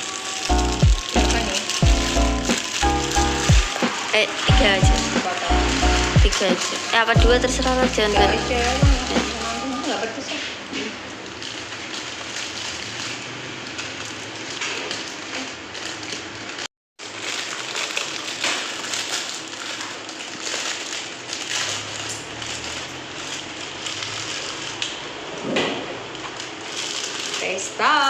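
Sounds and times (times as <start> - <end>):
food sizzling in frying pan: 0.0 - 15.4.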